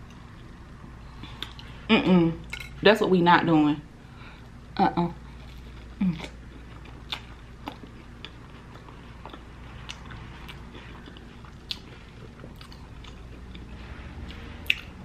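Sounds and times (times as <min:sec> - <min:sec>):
crisp crunches of chewing fries: 0:05.4 - 0:13.7
mouth sounds chewing: 0:05.5 - 0:15.0.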